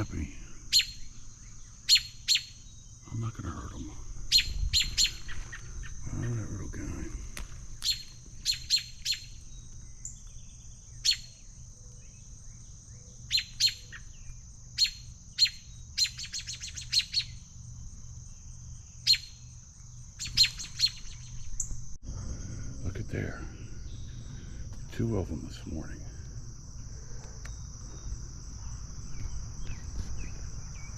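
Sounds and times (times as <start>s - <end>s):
bird alarm calls: 0.0s - 6.5s, 7.7s - 17.5s, 19.0s - 19.5s, 20.1s - 21.7s.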